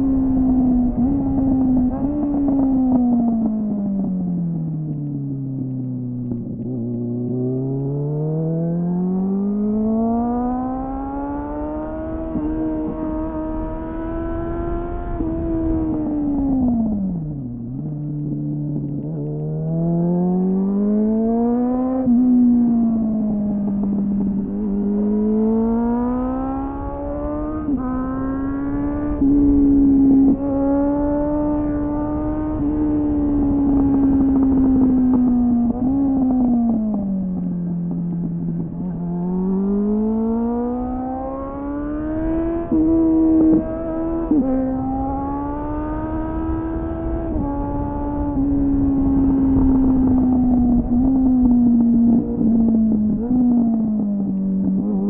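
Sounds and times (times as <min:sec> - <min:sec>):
low wind noise: 0:00.0 - 0:55.0
motorcycle engine revving: 0:00.0 - 0:55.0.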